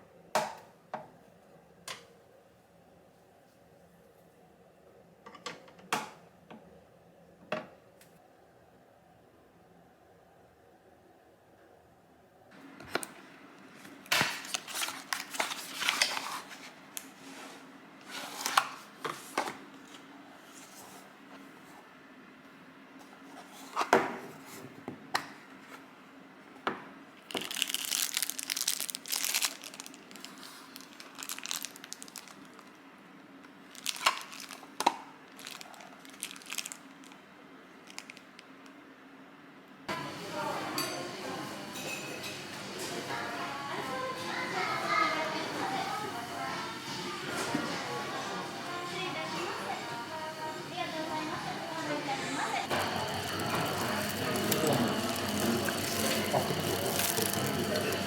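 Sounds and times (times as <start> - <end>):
packaging crinkling and tearing: 14.1 - 17.1, 27.2 - 32.8, 33.7 - 37.2, 37.8 - 38.4.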